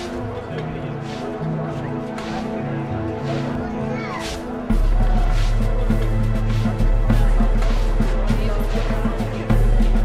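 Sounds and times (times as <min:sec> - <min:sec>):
music with heavy bass beat: 0:04.7 - 0:10.0.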